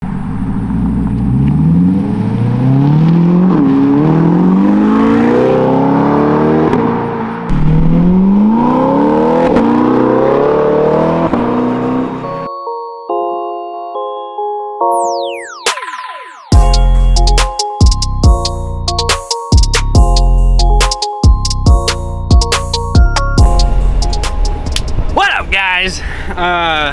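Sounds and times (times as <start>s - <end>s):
car engine accelerating: 0.0s - 12.5s, 21.9s - 25.2s.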